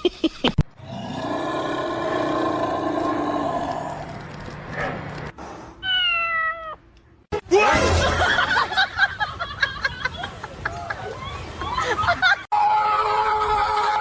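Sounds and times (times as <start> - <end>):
cat meowing: 5.8 - 6.8.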